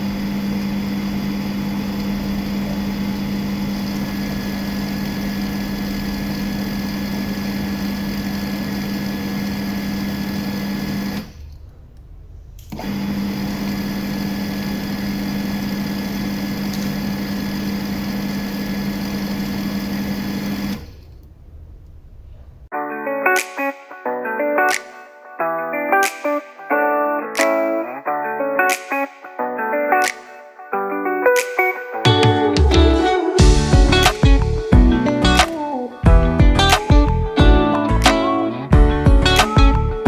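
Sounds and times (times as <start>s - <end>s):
small electric motor humming: 0.0s - 11.3s.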